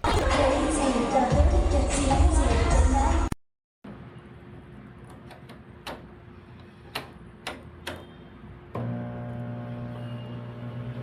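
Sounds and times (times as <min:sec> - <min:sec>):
microwave oven humming: 0:08.7 - 0:11.0.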